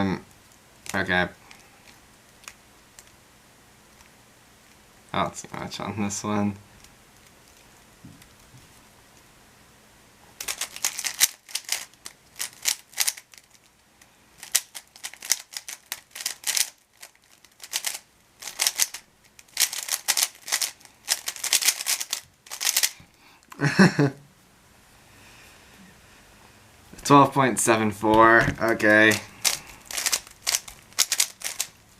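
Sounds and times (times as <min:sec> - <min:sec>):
puzzle cube plastic clicking: 0:10.4 - 0:13.6, 0:14.4 - 0:23.0, 0:28.4 - 0:31.8.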